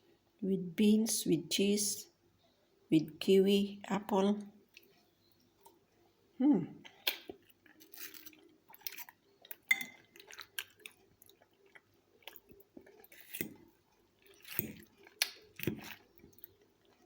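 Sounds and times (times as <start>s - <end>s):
chewing salad: 4.6s - 5.8s, 6.8s - 17.0s.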